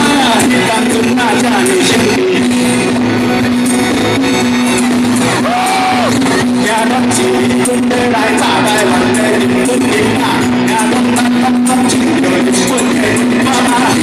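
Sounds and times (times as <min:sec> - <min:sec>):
rock band playing live: 0:00.0 - 0:14.0
person singing or shouting: 0:05.4 - 0:14.0.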